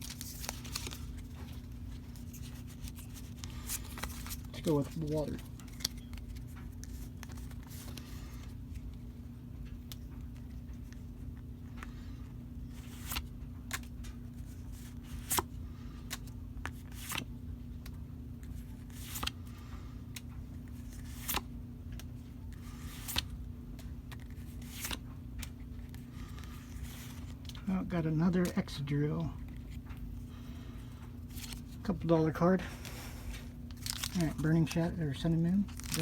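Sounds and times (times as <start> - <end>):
cards being flipped: 0.0 - 9.0, 12.7 - 19.4, 20.1 - 27.6, 31.0 - 31.8, 32.8 - 36.0
steady low hum: 0.0 - 36.0.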